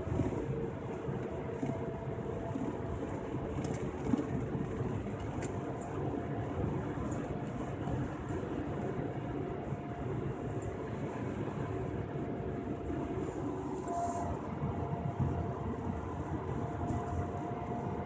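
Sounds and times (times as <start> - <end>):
engine and road rumble: 0.0 - 18.0.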